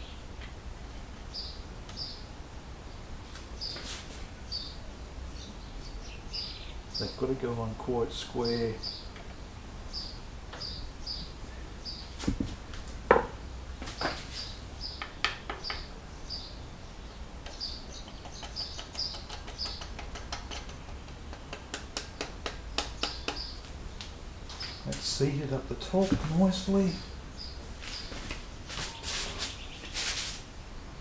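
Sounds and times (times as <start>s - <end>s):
bird chirping: 1.3s - 2.3s, 4.5s - 12.4s, 14.0s - 21.2s, 22.0s - 30.2s.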